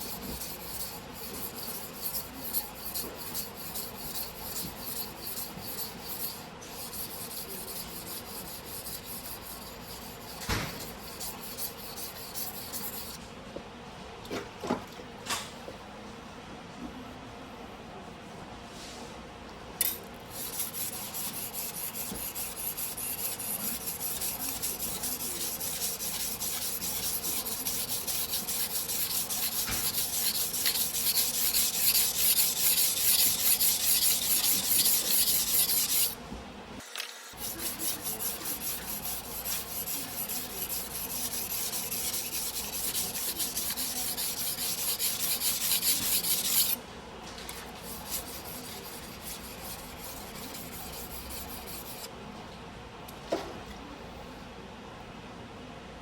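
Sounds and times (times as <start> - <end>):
knife scraping on whetstone: 0.0 - 13.2, 19.8 - 36.2, 37.3 - 46.8, 47.8 - 52.1.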